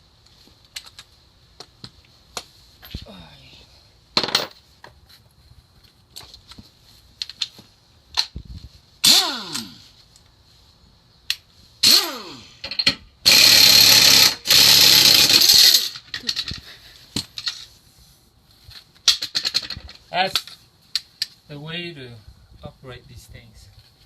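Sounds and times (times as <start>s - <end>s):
impact wrench spinning: 9.0s - 9.8s, 11.8s - 16.2s
impact wrench hammering: 11.8s - 16.0s.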